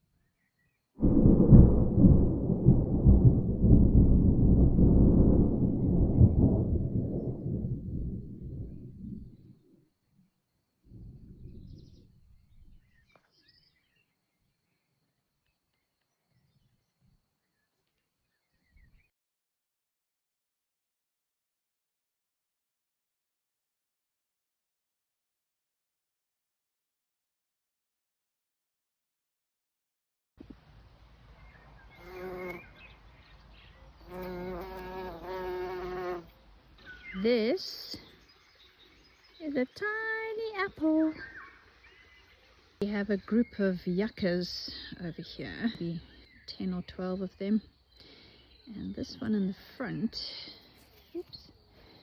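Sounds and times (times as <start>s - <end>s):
faint birds chirping: 0.0s - 1.0s, 5.6s - 19.1s, 30.6s - 52.0s
distant thunder rumble: 1.0s - 9.7s
bee buzzing in flight: 32.0s - 32.8s, 34.0s - 36.3s.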